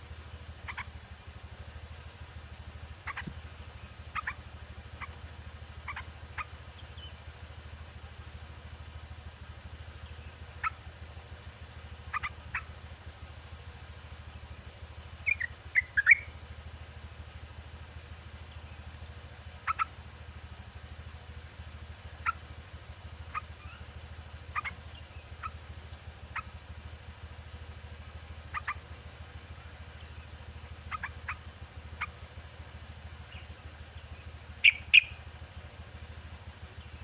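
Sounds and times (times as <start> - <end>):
steady high whine: 0.0 - 37.0
bird giving sharp chirps: 12.1 - 12.7, 15.2 - 16.3, 24.5 - 25.6, 34.6 - 35.3.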